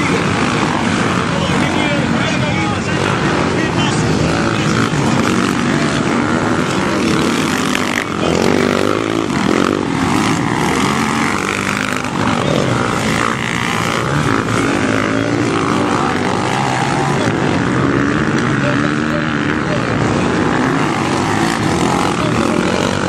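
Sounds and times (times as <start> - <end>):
motocross bike engines revving: 0.0 - 23.0.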